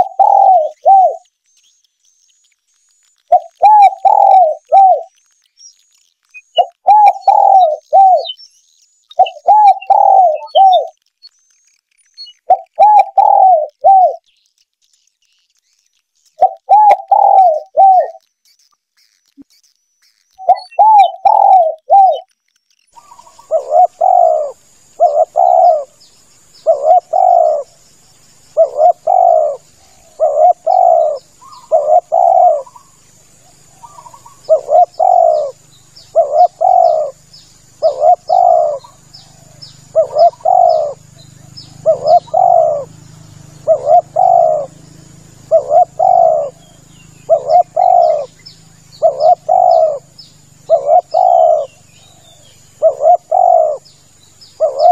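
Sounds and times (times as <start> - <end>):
dove cooing: 0.0 - 1.3, 3.3 - 5.1, 6.4 - 8.4, 9.2 - 11.0, 12.4 - 14.2, 16.4 - 18.2, 20.4 - 22.3, 23.0 - 26.0, 26.6 - 27.8, 28.5 - 54.9
small birds chirping: 0.0 - 54.9.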